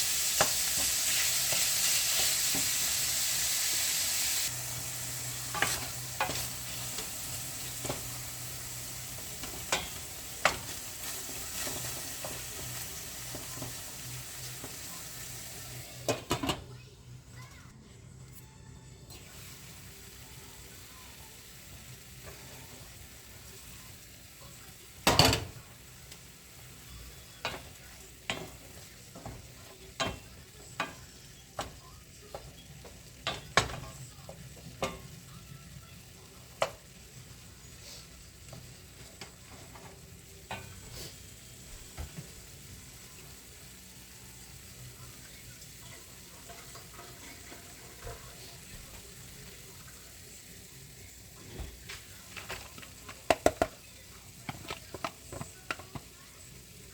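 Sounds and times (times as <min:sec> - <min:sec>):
food sizzling in a pan: 0:00.0 - 0:17.7, 0:19.1 - 0:56.9
utensil knocking against pan: 0:53.2 - 0:53.8.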